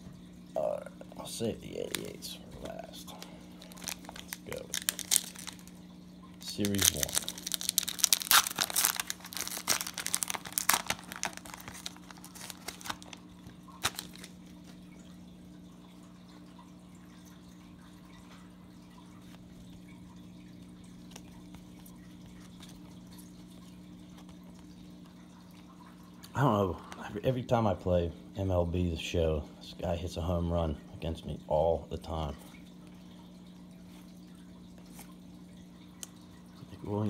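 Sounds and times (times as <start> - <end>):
steady low hum: 0.0 - 37.0
foil wrapper tearing and crinkling: 3.6 - 5.8, 6.4 - 13.2, 13.8 - 14.4.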